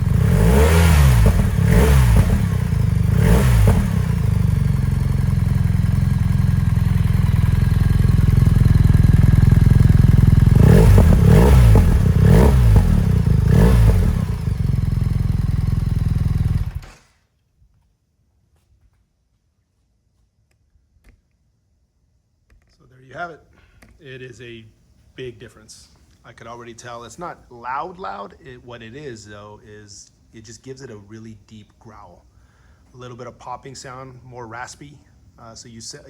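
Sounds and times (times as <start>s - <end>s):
exhaust popping: 0.0s - 17.0s
motorcycle engine idling and revving: 0.0s - 17.1s.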